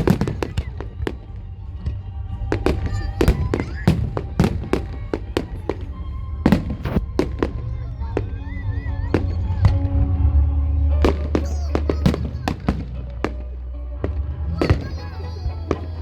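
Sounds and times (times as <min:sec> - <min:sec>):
fireworks banging: 0:00.0 - 0:10.0, 0:11.0 - 0:13.4
music playing: 0:00.0 - 0:16.0
steady low rumble: 0:00.0 - 0:16.0.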